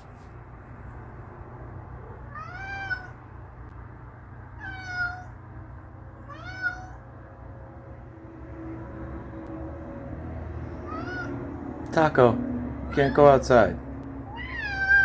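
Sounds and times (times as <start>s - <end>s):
cat meowing: 2.1s - 3.2s, 4.5s - 5.4s, 6.2s - 7.0s, 10.6s - 11.4s, 14.2s - 15.0s.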